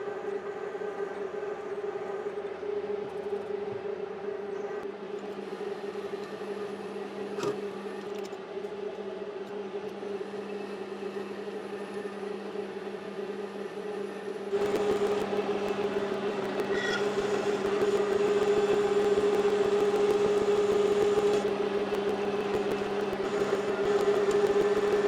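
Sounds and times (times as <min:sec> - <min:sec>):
metal lathe humming: 0:14.5 - 0:25.0.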